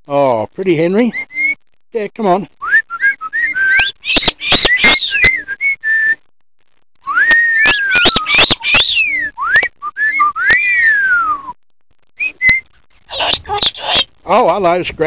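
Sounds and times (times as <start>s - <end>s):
parrot whistling: 1.1s - 1.6s, 2.6s - 6.2s, 7.0s - 11.5s, 12.2s - 14.1s.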